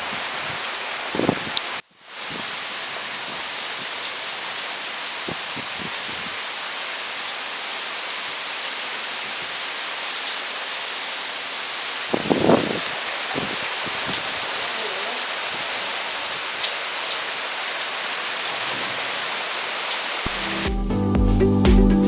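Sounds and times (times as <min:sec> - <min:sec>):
rain hissing on surfaces: 0:00.0 - 0:20.7
raindrop taps: 0:04.0 - 0:06.4.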